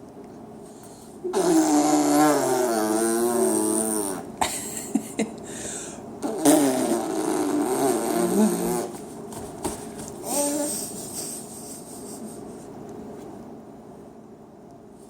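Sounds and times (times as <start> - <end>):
person making silly vocal noises: 6.2 - 9.0.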